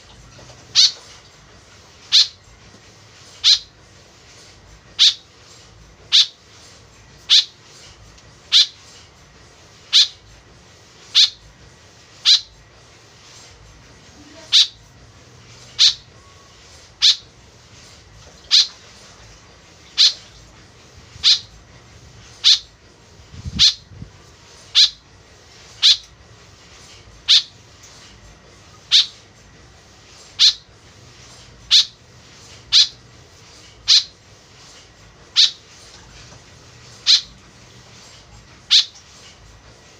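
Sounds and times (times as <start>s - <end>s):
bird giving sharp calls: 0.7s - 1.0s, 2.1s - 2.4s, 3.4s - 3.7s, 5.0s - 5.2s, 6.1s - 6.4s, 7.3s - 7.5s, 8.5s - 8.8s, 9.9s - 10.2s, 11.2s - 11.4s, 12.2s - 12.5s, 14.4s - 14.8s, 15.8s - 16.1s, 17.0s - 17.2s, 18.5s - 18.8s, 20.0s - 20.2s, 21.2s - 21.5s, 22.4s - 22.7s, 23.6s - 23.9s, 24.7s - 25.0s, 25.8s - 26.0s, 27.2s - 27.5s, 28.9s - 29.2s, 30.4s - 30.6s, 31.7s - 32.0s, 32.7s - 33.0s, 33.9s - 34.1s, 35.4s - 35.6s, 37.0s - 37.3s, 38.7s - 39.0s.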